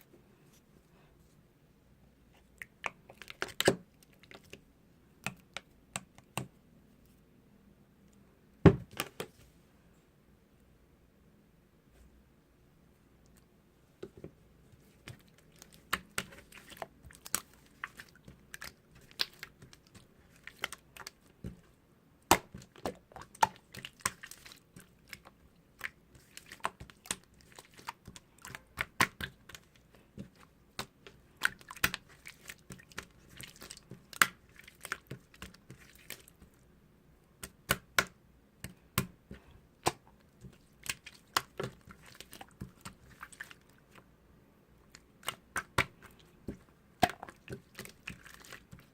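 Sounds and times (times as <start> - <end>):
slime clicking and popping: 25.2 - 35.2.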